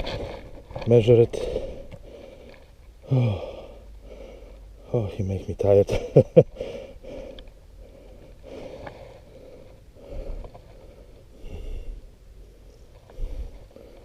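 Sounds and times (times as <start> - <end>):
man breathing hard: 1.4 - 5.0, 6.5 - 14.0.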